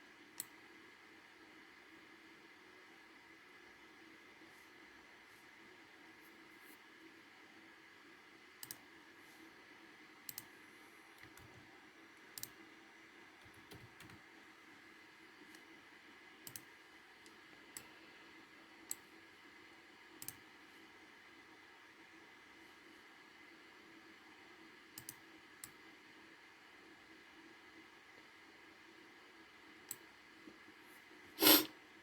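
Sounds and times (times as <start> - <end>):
computer mouse clicking: 0.4 - 0.6, 8.6 - 8.8, 10.2 - 10.5, 11.2 - 11.7, 12.3 - 12.6, 13.4 - 14.2, 16.4 - 17.9, 20.2 - 20.4, 25.0 - 25.8.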